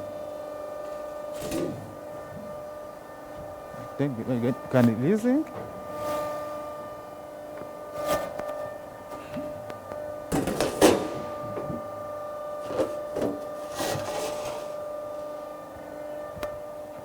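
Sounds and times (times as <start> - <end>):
plate rolling machine humming: 9.9 - 16.2.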